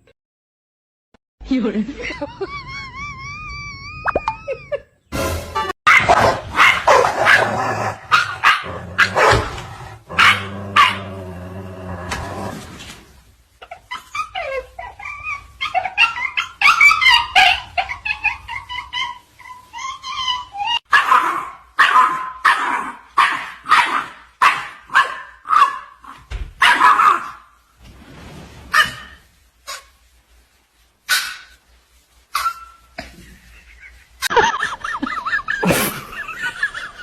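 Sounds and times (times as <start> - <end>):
dog yelping and barking: 5.9 - 9.5, 10.2 - 11.1, 13.6 - 27.6, 28.7 - 29.9, 31.1 - 31.6, 32.3 - 33.0.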